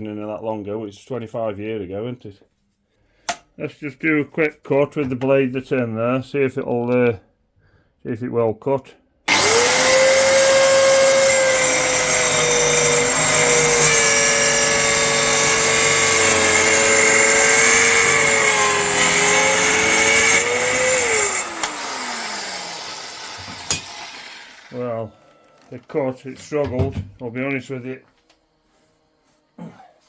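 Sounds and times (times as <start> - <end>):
circular saw cutting wood: 9.3 - 26.0.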